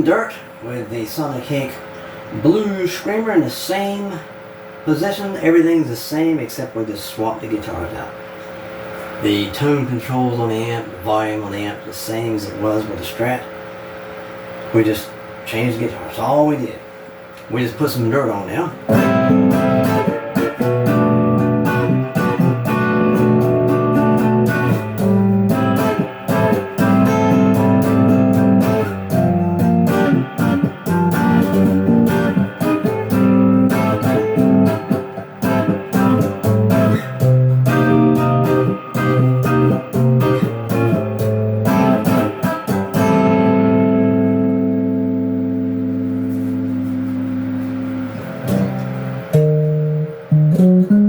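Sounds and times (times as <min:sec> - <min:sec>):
overdriven electric guitar: 0:18.9 - 0:51.0.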